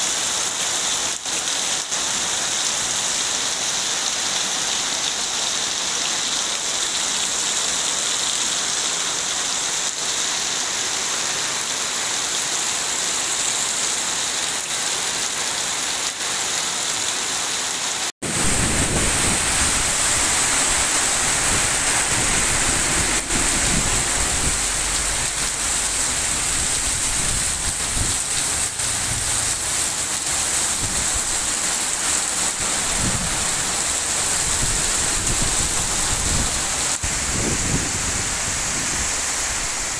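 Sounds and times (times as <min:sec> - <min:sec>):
heavy rain: 0:00.0 - 0:39.9
low rumbling: 0:18.2 - 0:29.8.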